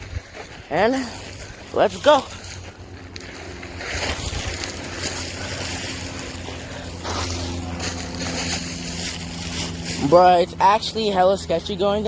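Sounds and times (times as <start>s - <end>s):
wind rumbling on microphone: 0.0s - 1.7s, 3.6s - 10.0s.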